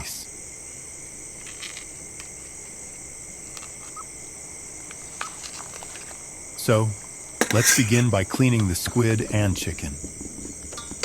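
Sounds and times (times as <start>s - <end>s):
crickets chirping: 0.0s - 11.0s
faint clicks: 1.4s - 4.2s.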